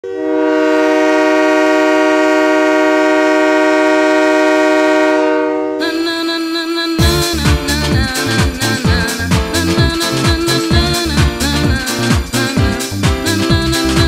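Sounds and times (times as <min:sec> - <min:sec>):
air horn chord: 0:00.0 - 0:07.4
dance music synth line: 0:07.0 - 0:14.0.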